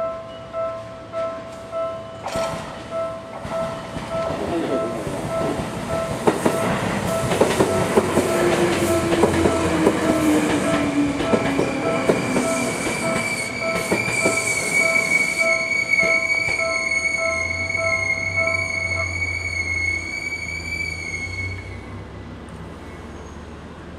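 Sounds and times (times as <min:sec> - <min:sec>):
level-crossing warning bell: 0:00.0 - 0:21.9
wheels clacking over rail joints: 0:02.2 - 0:18.4
high wheel squeal: 0:06.6 - 0:22.0, 0:22.9 - 0:23.6.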